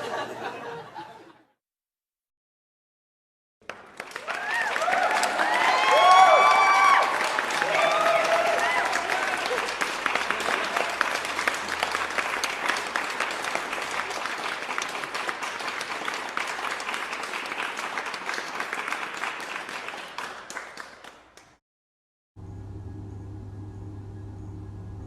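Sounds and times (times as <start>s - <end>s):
crowd applauding: 3.6s - 21.6s
steady low hum: 22.4s - 25.0s.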